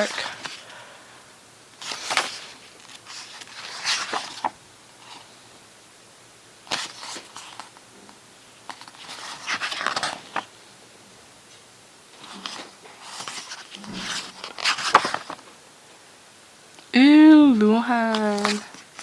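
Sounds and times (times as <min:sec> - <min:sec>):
book pages turning: 0:00.0 - 0:00.7, 0:01.8 - 0:05.3, 0:06.7 - 0:07.8, 0:08.7 - 0:10.5, 0:12.2 - 0:15.6, 0:18.0 - 0:19.0.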